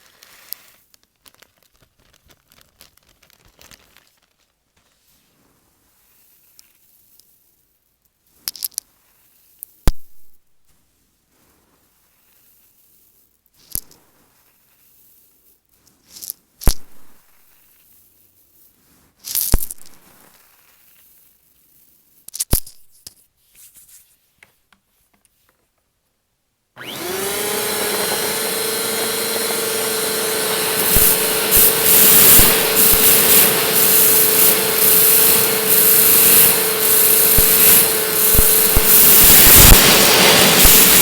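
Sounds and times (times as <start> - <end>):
rice rattling into vacuum: 26.8 - 41.0
vacuum cleaner motor whine: 26.8 - 41.0.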